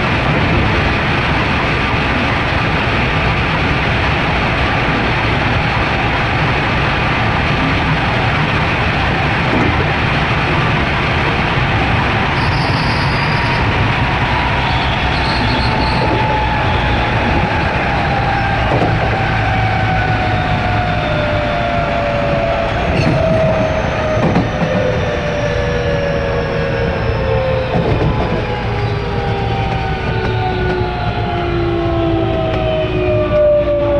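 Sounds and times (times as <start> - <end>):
motor and inverter whine: 0.0 - 33.9
train wheels rumbling on rail: 0.0 - 33.9.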